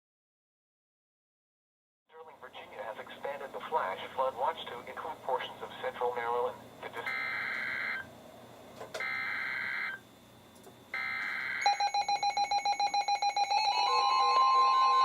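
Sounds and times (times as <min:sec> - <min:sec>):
steady warning alarm tone: 0:06.6 - 0:08.1, 0:09.0 - 0:15.0.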